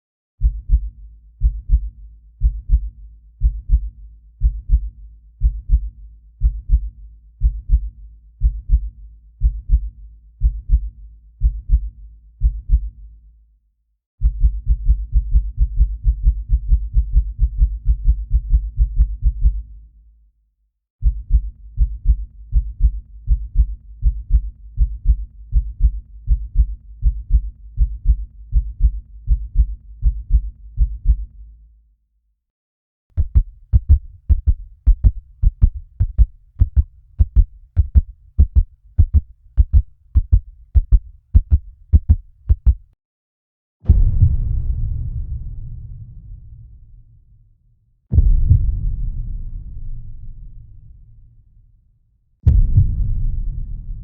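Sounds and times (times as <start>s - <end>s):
heartbeat: 0.4s - 13.0s, 14.2s - 19.7s, 21.0s - 31.4s, 33.1s - 43.0s, 52.5s - 53.6s.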